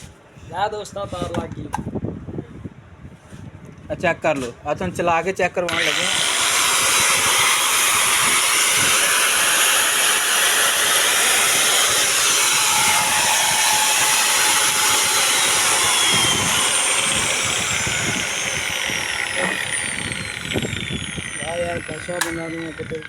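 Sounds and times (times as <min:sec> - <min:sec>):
angle grinder whining: 0:05.7 - 0:23.0.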